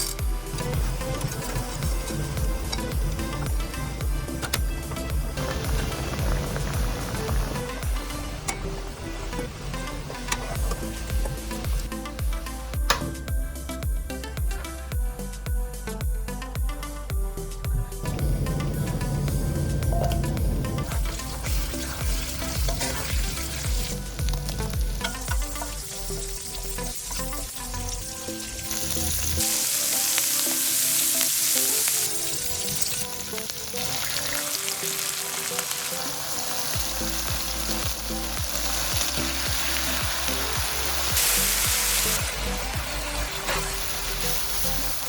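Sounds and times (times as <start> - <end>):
food sizzling in a pan: 0.0 - 13.2, 18.2 - 45.0
music with beating bass: 0.0 - 29.8, 36.7 - 45.0.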